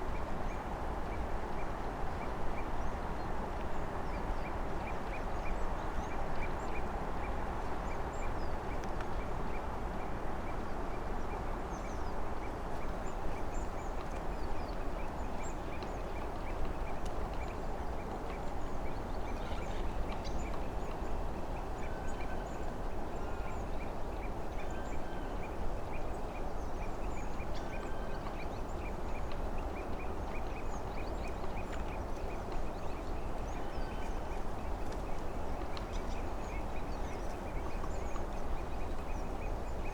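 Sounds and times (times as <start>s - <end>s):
small birds chirping: 12.8s - 39.9s.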